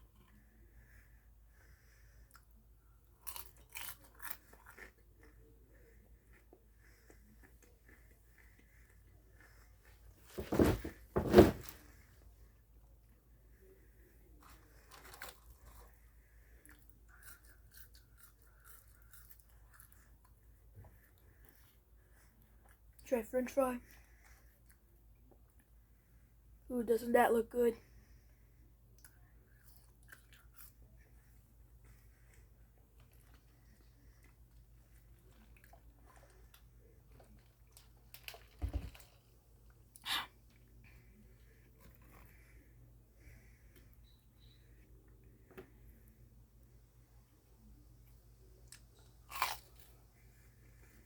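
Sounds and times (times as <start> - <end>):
close-up chewing: 0.0 - 10.3, 13.1 - 23.1, 28.8 - 46.7, 47.7 - 51.0
knocks and thumps: 10.3 - 11.8.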